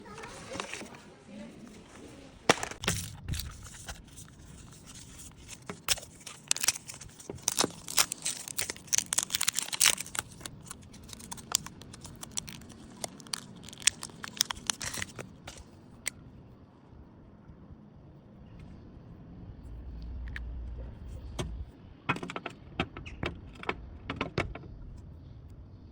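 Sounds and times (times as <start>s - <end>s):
packaging crackling and rustling: 0.0s - 1.1s, 1.7s - 15.7s.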